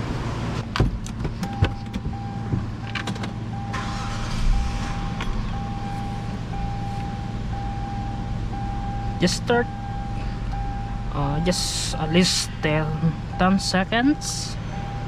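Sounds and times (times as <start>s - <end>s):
car warning chime beeping: 1.4s - 15.0s.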